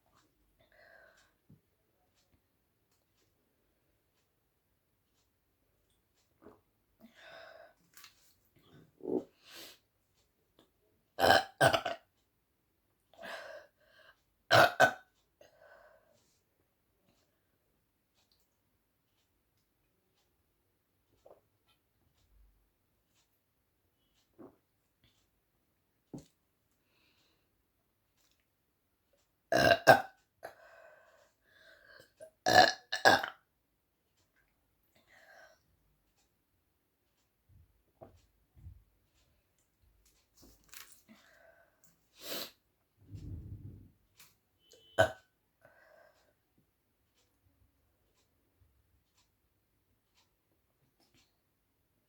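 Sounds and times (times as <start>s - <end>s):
woman burping: 11.2s - 12.0s, 14.5s - 15.1s, 29.5s - 30.6s, 32.4s - 33.4s.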